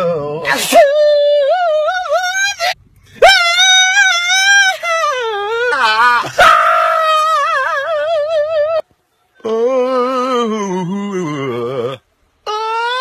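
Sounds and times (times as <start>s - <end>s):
man singing: 0.0s - 6.4s, 9.4s - 13.0s.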